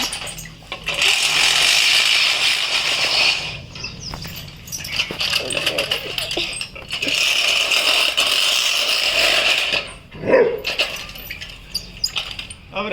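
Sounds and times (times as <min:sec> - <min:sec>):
lawnmower running: 0:00.0 - 0:10.0.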